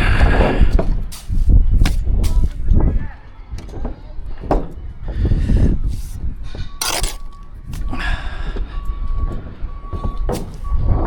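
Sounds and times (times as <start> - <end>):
hissing scrapes: 1.1 - 2.6, 5.8 - 7.9
vehicle reversing alarm beeping: 3.2 - 11.0.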